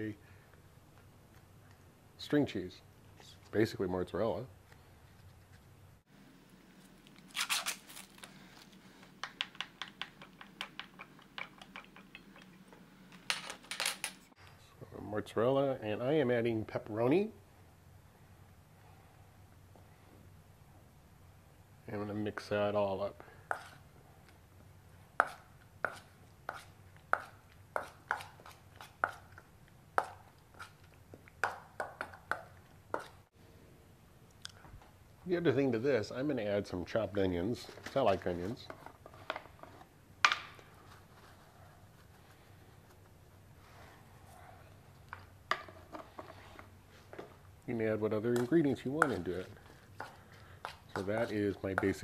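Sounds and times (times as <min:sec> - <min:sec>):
plastic wrapper crinkling: 0:06.8 - 0:08.8.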